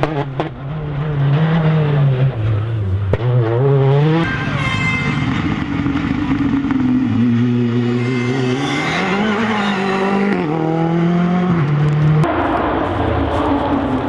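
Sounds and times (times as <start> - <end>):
rally car engine revving: 0.0 - 14.0
sharp crack: 11.9 - 14.0.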